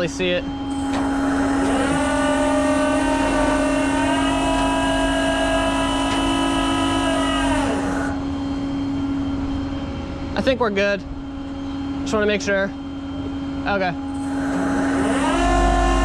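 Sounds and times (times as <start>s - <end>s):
hydraulic winch whine: 0.0s - 9.7s, 14.0s - 16.0s
steady low hum: 0.0s - 16.0s.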